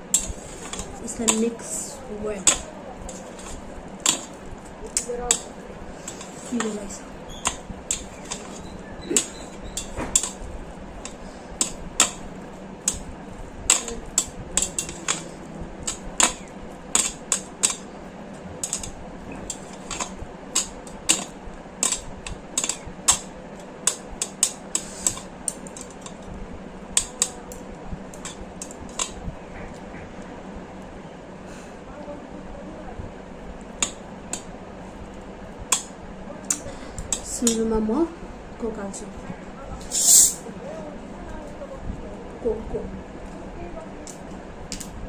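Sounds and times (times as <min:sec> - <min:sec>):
utensil scraping a bowl: 0:00.1 - 0:10.4, 0:23.9 - 0:26.2, 0:39.8 - 0:40.4.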